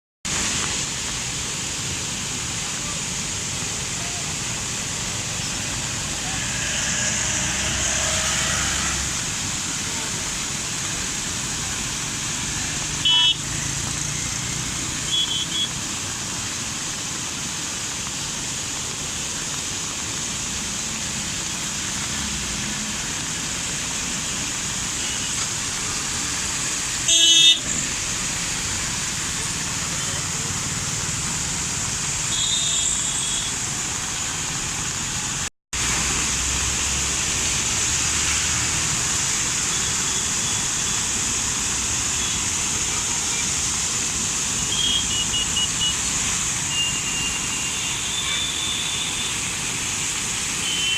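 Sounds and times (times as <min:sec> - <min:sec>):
steady rushing noise: 0:00.3 - 0:32.3
vehicle horns honking: 0:13.0 - 0:13.5, 0:27.1 - 0:27.6.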